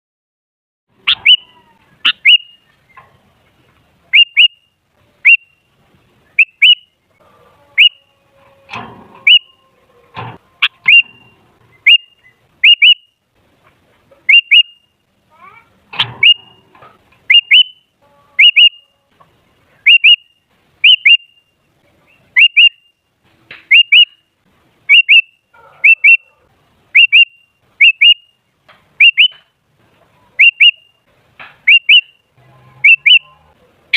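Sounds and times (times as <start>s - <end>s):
bird sharp call notes: 1.1s - 2.7s, 6.4s - 6.9s, 9.2s - 9.5s, 10.6s - 13.1s, 14.3s - 14.9s, 16.0s - 16.7s, 17.3s - 18.9s, 19.8s - 21.4s, 24.9s - 26.2s, 27.0s - 28.4s, 29.0s - 29.5s, 30.4s - 31.0s, 31.6s - 32.2s, 32.8s - 33.3s.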